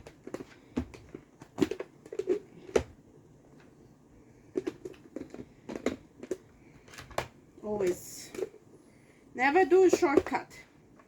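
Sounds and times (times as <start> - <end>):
kitchen containers and utensils knocking: 9.6 - 10.6.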